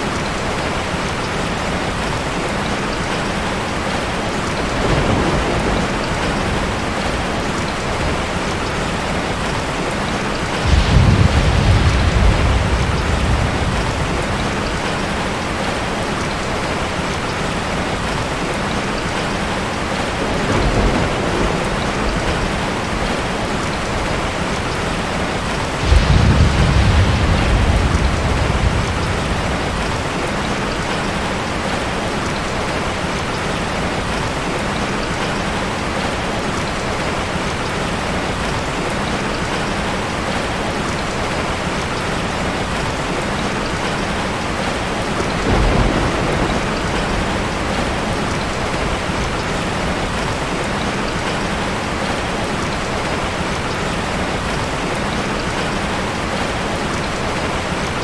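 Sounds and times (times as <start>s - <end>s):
heavy rain: 0.0s - 58.0s
thunder rumbling: 3.8s - 33.3s, 43.8s - 52.4s
sharp thunder clap: 10.5s - 16.0s, 25.4s - 31.2s, 45.3s - 50.2s.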